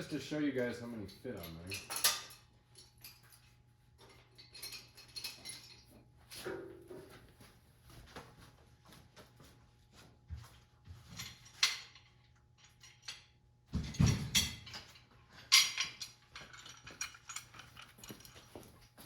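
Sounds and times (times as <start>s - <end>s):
metal clamps clicking and clanking: 1.4s - 3.3s, 14.0s - 18.8s.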